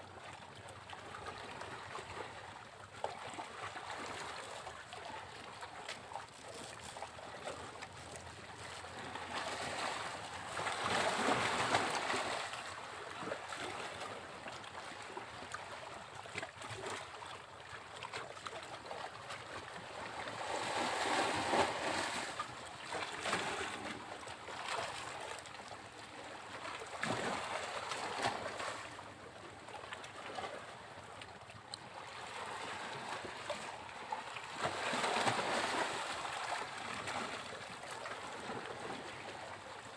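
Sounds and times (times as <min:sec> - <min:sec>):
sea waves breaking on a beach: 0:00.0 - 0:39.9.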